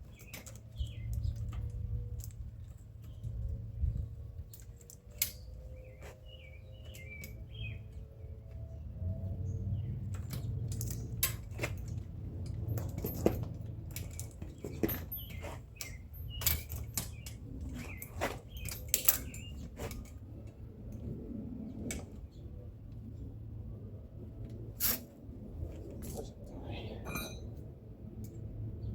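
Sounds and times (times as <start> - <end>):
metallic clinks of tools and bike parts: 10.0 - 20.6, 27.0 - 27.6.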